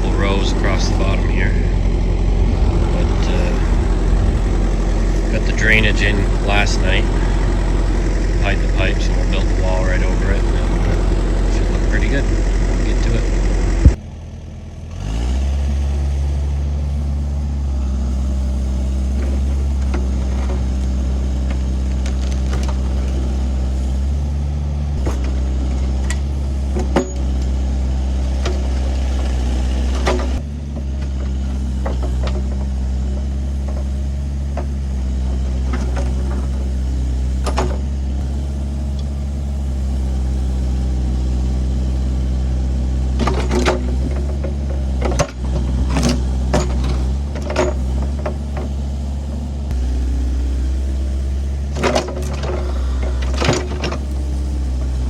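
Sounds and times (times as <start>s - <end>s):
excavator diesel engine running: 0.0s - 55.0s
sharp knocks and clunks: 25.0s - 27.5s, 28.3s - 36.8s, 37.4s - 38.3s, 43.2s - 49.8s, 51.6s - 55.0s.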